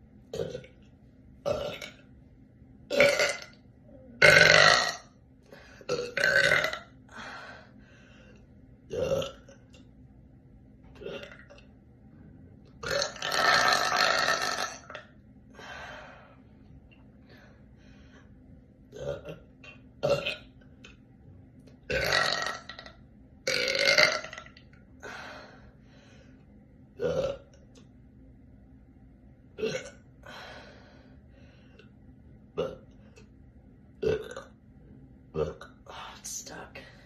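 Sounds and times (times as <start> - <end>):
woman belching: 1.5 - 2.0, 2.9 - 3.6, 4.2 - 5.1, 5.9 - 6.9, 8.9 - 9.5, 11.0 - 11.6, 12.8 - 15.0, 19.0 - 20.4, 21.9 - 22.9, 23.5 - 24.6, 27.0 - 27.4, 29.6 - 30.0, 34.0 - 34.5.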